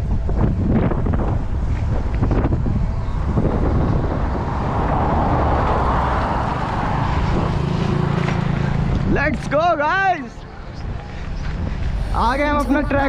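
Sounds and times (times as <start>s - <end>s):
wind buffeting microphone: 0.0s - 9.8s
traffic noise: 0.0s - 13.0s
vehicle passing by: 2.2s - 9.6s.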